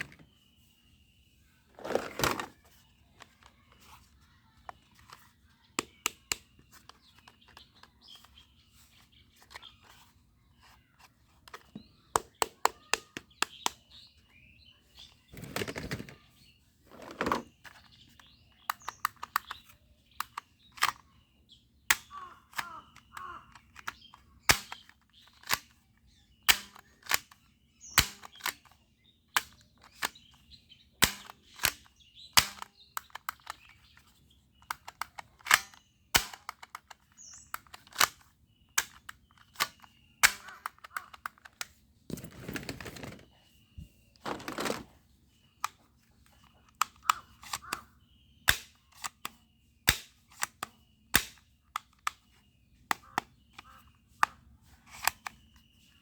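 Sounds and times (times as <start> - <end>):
toy gun clicks and snaps: 5.8 - 7.9, 18.2 - 21.1, 21.9 - 25.8, 26.5 - 28.8, 29.4 - 30.2, 31.0 - 33.8, 34.6 - 41.8, 46.7 - 47.9, 48.5 - 52.3
rustling: 42.1 - 43.5, 44.2 - 45.0.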